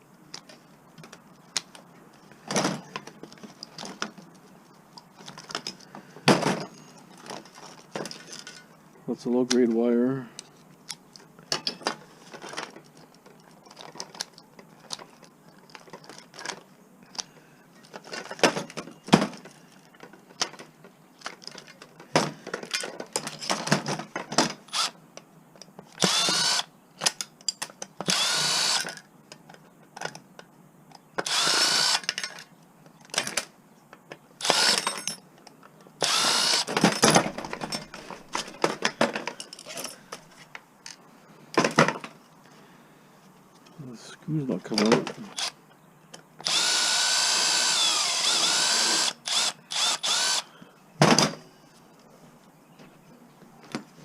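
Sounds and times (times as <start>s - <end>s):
clicks and knocks of handled parts: 0.3s - 8.8s, 10.4s - 26.4s, 27.0s - 28.2s, 28.8s - 31.4s, 32.0s - 42.6s
power drill driving screws: 24.7s - 25.0s, 26.0s - 26.7s, 28.0s - 29.0s, 31.2s - 32.1s, 34.4s - 34.9s, 36.0s - 36.8s, 46.4s - 50.5s.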